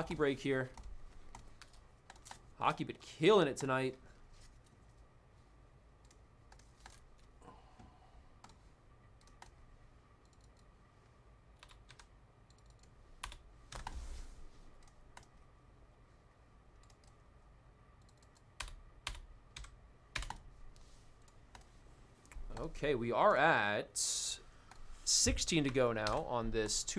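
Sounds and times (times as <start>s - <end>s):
typing on computer keyboard: 0.8s - 2.4s, 11.6s - 14.0s, 18.0s - 20.4s.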